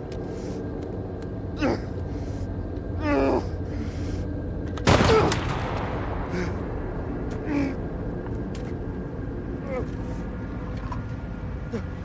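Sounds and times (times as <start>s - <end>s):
low engine drone: 0.0s - 12.0s
loud gunshot: 4.9s - 6.4s.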